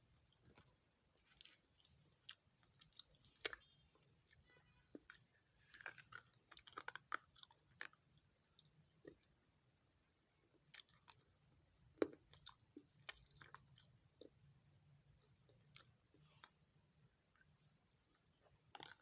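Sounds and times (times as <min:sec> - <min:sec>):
dry clay crunching while chewed: 0:00.0 - 0:09.5, 0:10.4 - 0:14.4, 0:17.3 - 0:19.0.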